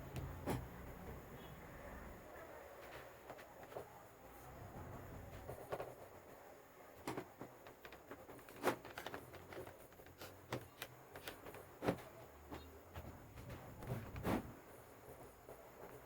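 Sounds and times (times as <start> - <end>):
handling clicks and knocks: 7.0 - 14.4.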